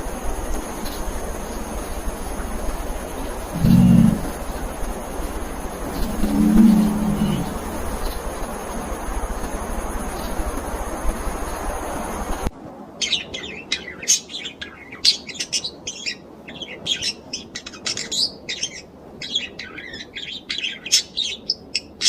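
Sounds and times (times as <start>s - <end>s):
small birds chirping: 2.2s - 8.2s.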